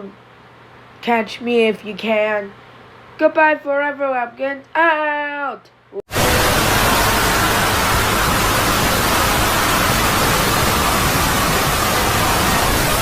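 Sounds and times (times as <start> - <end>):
static white noise hiss: 5.8 - 13.0.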